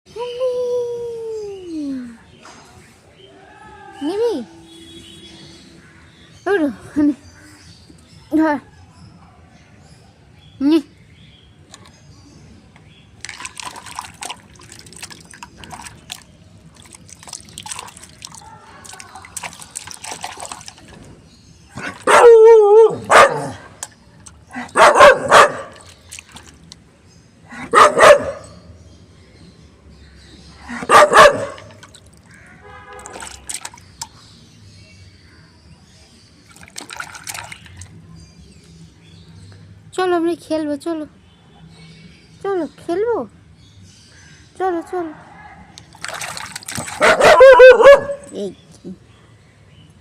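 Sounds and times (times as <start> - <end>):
dog barking: 21.8 - 23.6, 24.7 - 25.8, 27.7 - 28.6, 30.8 - 31.8, 47.0 - 48.3.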